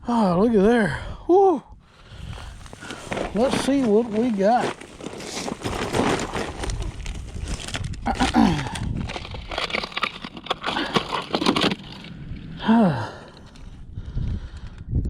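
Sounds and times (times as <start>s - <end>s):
wind rumbling on microphone: 0.3s - 15.0s
microphone handling noise: 2.1s - 10.0s.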